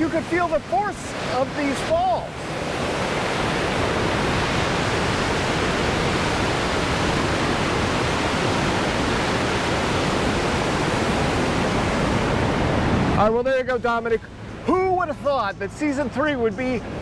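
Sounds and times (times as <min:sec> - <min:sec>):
waterfall rushing: 0:00.0 - 0:14.6.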